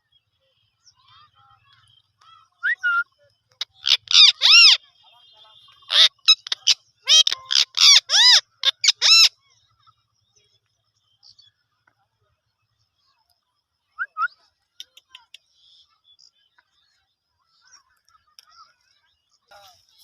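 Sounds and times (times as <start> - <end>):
parakeet squawking: 3.6 - 4.8, 5.7 - 9.3.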